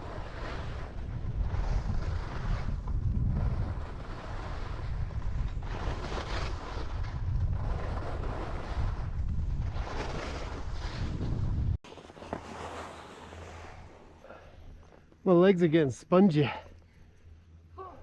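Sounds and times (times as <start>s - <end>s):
wind buffeting microphone: 0.0s - 11.8s
skis scraping across snow: 0.0s - 14.3s.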